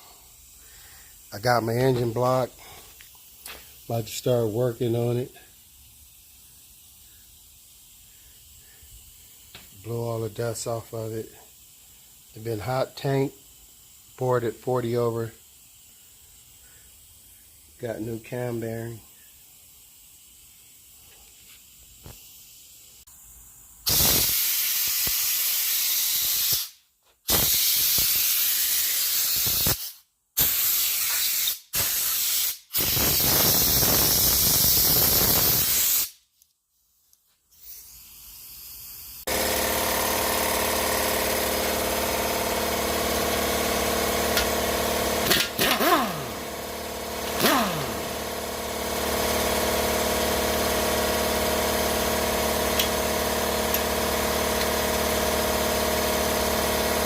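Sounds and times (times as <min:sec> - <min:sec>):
compressed air hissing blasts: 0:00.0 - 0:36.3, 0:37.4 - 0:56.7
motor running: 0:39.3 - 0:57.0.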